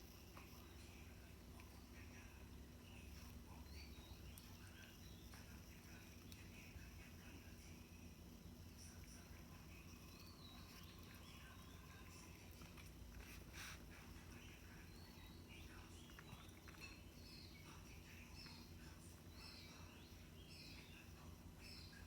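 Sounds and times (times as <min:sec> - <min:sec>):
low steady hum: 0:00.0 - 0:22.0
faint high chirps: 0:08.7 - 0:12.9.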